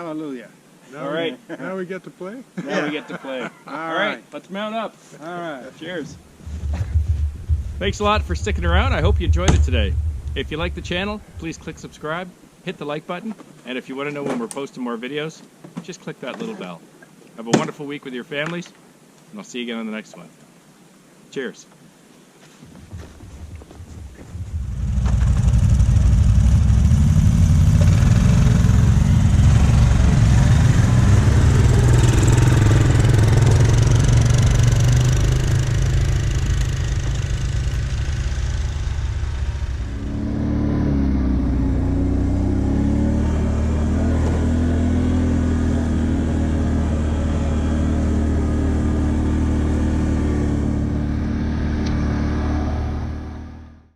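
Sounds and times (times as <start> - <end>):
vehicle engines revving: 6.2 - 12.0, 23.8 - 53.8.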